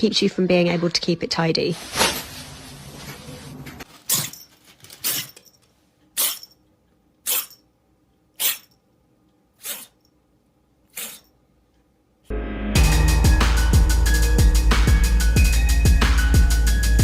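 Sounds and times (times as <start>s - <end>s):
cat sneezing: 7.2s - 7.6s, 8.4s - 8.7s, 9.6s - 10.0s, 10.9s - 11.3s.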